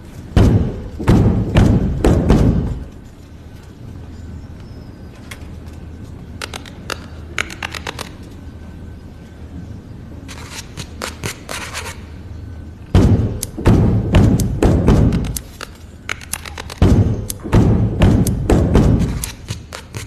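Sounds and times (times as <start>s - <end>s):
low steady hum: 0.0s - 20.0s
sharp clicks and crackles: 15.2s - 17.6s.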